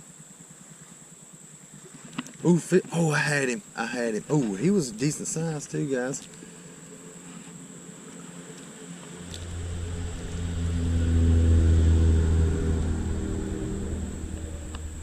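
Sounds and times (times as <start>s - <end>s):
vehicle engine passing by: 9.1s - 15.0s.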